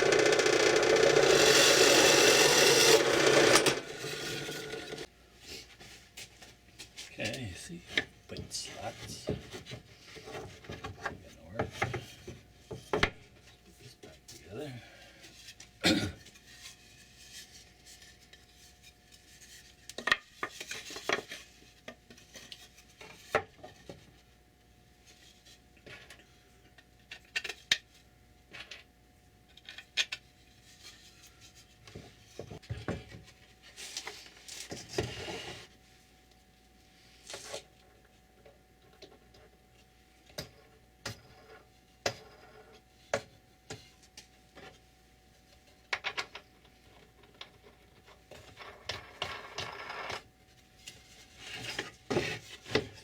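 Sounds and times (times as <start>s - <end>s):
wood rubbing: 0.0s - 5.1s.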